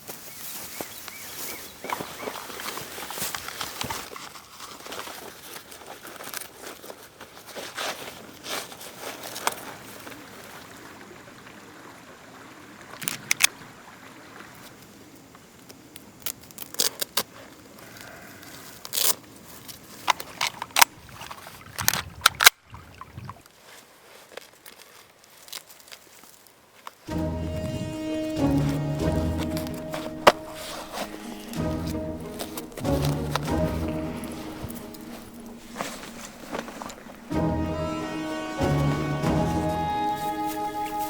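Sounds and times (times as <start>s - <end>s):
faint outdoor background: 24.3s - 41.0s
gear clicks and rustles: 29.4s - 37.3s.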